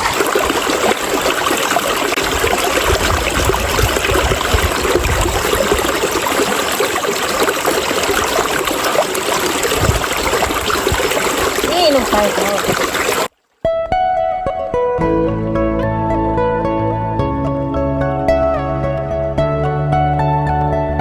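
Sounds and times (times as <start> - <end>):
river water rushing over rocks: 0.0 - 13.3.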